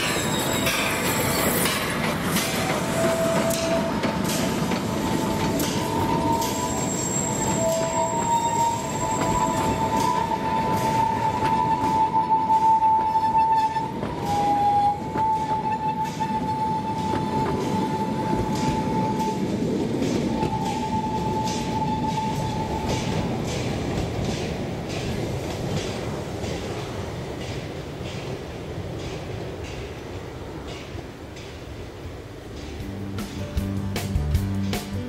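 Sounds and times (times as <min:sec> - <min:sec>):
train wheels squealing: 0:00.0 - 0:25.2
train passing: 0:00.0 - 0:35.0.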